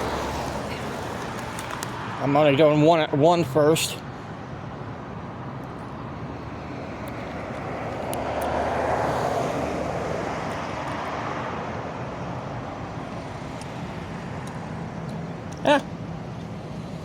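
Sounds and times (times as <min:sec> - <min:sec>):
vehicle passing by: 0:00.0 - 0:02.2, 0:06.4 - 0:12.1.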